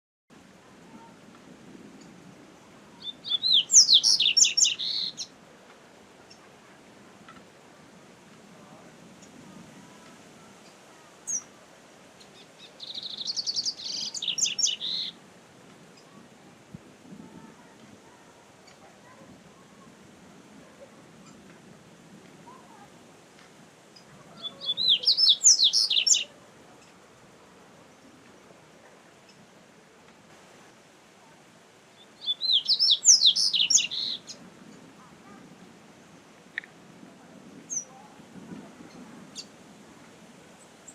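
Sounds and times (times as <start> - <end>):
bird singing high twittering: 3.0 - 5.3, 12.3 - 15.2, 24.4 - 26.3, 32.0 - 34.4.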